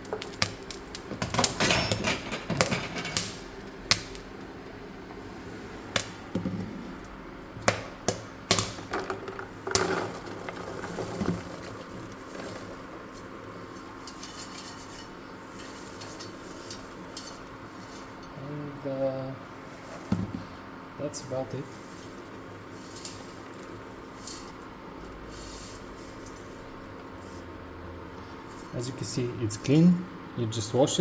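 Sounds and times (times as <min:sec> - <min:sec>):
popcorn popping in a pot: 0:00.0 - 0:27.4.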